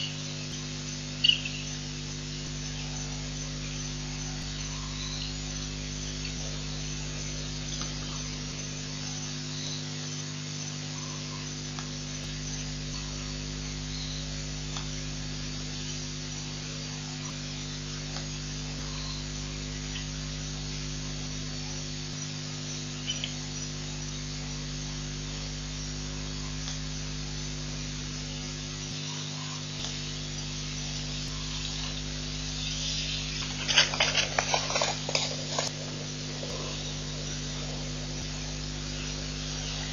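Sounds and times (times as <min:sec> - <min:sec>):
background hiss: 0:00.0 - 0:20.4, 0:21.6 - 0:39.9
electrical hum: 0:00.0 - 0:39.9.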